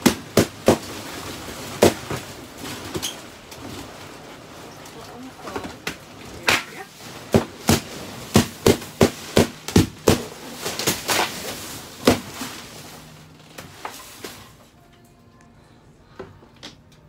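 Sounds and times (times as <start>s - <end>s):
balloons popping: 0.0s - 3.3s, 5.6s - 14.4s.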